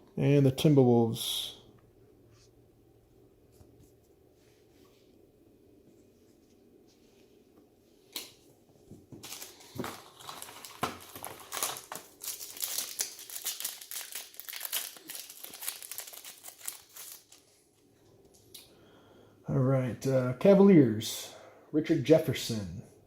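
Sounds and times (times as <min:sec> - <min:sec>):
foil wrapper crinkling and tearing: 0:09.2 - 0:17.6.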